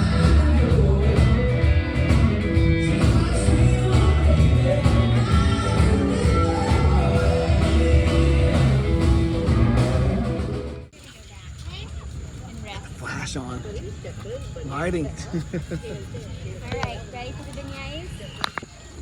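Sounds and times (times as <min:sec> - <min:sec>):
upbeat song with singing: 0:00.0 - 0:10.5.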